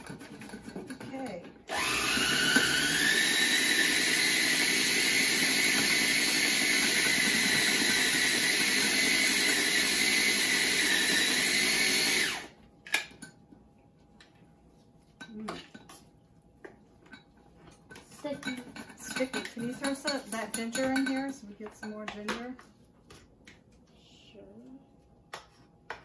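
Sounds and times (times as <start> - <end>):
electric blender whining: 1.7 - 12.6.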